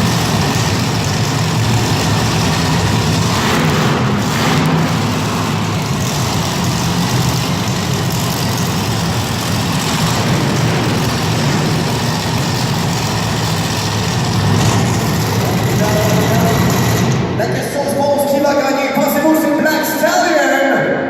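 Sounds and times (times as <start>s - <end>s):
truck engine running: 0.0s - 18.4s.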